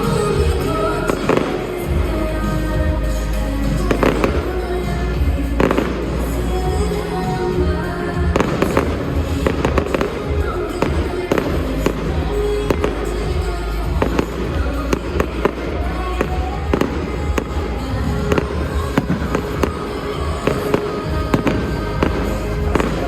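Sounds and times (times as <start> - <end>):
fireworks bangs and crackles: 8.3 - 23.0.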